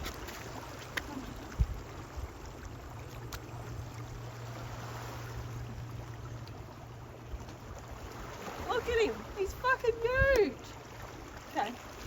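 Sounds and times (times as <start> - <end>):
low steady hum: 0.0 - 12.0
water wash: 0.0 - 12.0
wind: 0.0 - 12.0.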